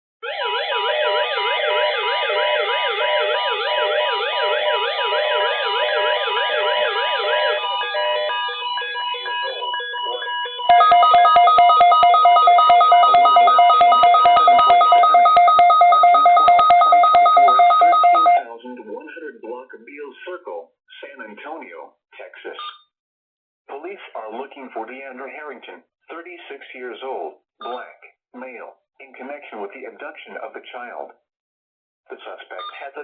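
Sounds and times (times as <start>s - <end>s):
steady alarm tone: 0.2s - 18.4s
pulsing two-tone beep: 9.2s - 18.4s.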